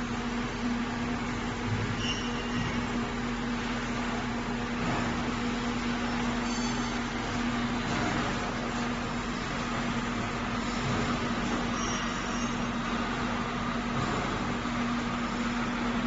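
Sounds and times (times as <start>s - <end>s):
welding machine hum and hiss: 0.0s - 16.0s.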